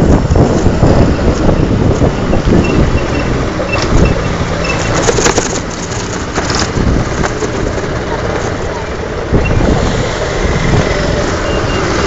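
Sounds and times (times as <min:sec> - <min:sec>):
wind rumbling on microphone: 0:00.0 - 0:12.0.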